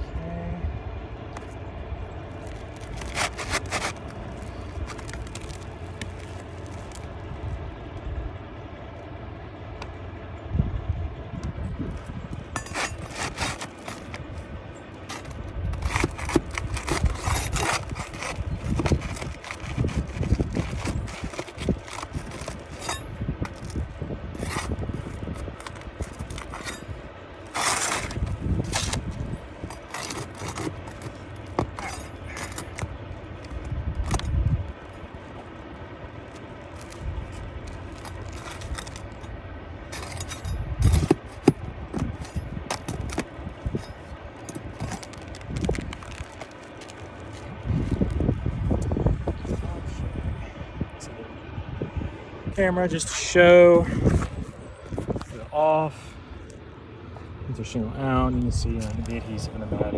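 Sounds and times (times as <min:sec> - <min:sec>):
metal tools scraping shingles: 0:02.3 - 0:07.2, 0:11.9 - 0:48.3, 0:52.9 - 0:56.1.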